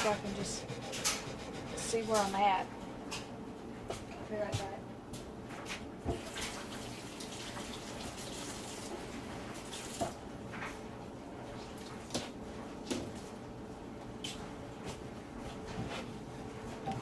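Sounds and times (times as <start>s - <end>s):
water running from a tap: 6.2s - 10.2s.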